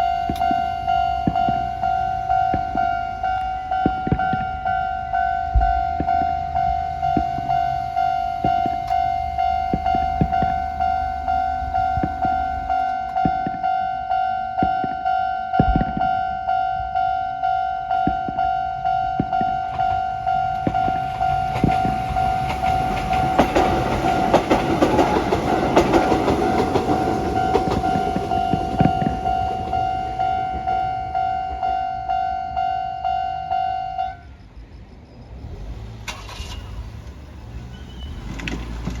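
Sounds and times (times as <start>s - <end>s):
train wheels clacking on rail joints: 0.0s - 13.7s, 18.0s - 30.8s, 37.9s - 39.0s
level crossing alarm ringing: 0.0s - 34.3s.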